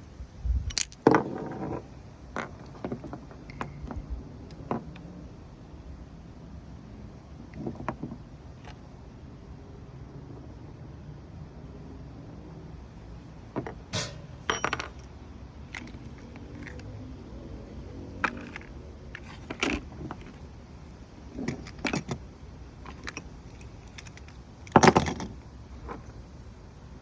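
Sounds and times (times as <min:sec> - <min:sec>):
small metal objects clinking: 0:14.0 - 0:15.1.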